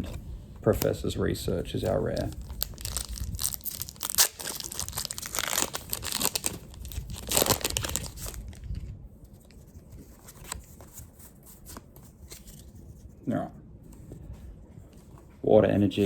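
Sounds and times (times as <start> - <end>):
foil wrapper crinkling and tearing: 1.9 - 8.8.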